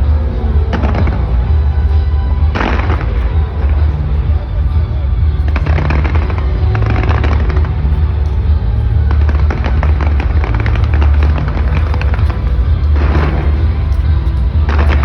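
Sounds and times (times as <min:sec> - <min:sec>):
loud low rumble: 0:00.0 - 0:15.0
music: 0:00.0 - 0:15.0
fireworks crackling: 0:05.5 - 0:15.0.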